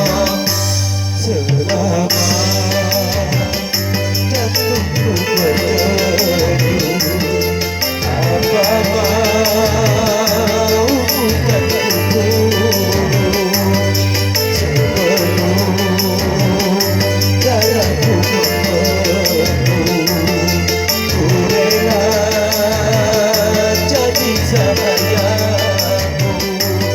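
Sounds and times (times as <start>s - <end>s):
song with melody bass and beat: 0.0s - 26.9s.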